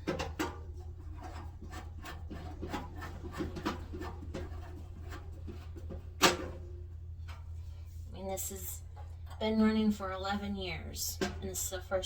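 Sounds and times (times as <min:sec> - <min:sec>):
scraping and rubbing inside dryer: 0:00.0 - 0:12.0
steady low hum: 0:00.0 - 0:12.0.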